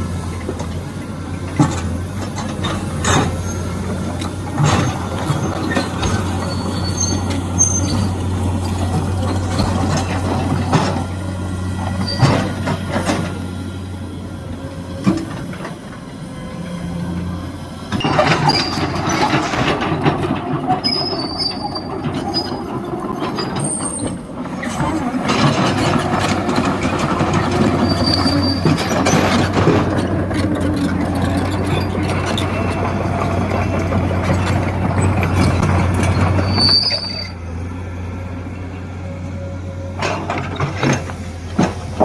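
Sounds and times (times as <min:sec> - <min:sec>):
excavator diesel engine hum: 0:00.0 - 0:42.0
short high squeals: 0:05.0 - 0:08.1, 0:27.8 - 0:28.7, 0:36.4 - 0:37.4.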